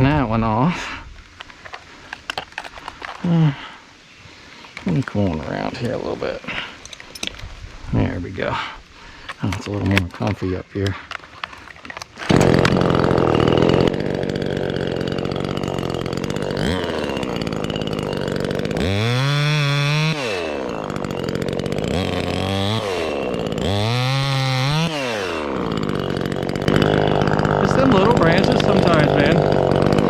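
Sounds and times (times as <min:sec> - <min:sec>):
chainsaw cutting wood: 0:09.1 - 0:30.0.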